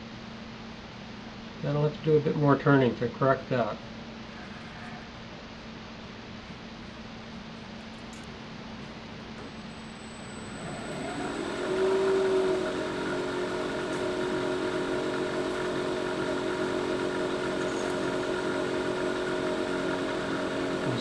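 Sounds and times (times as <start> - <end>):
wood lathe running: 8.1 - 21.0.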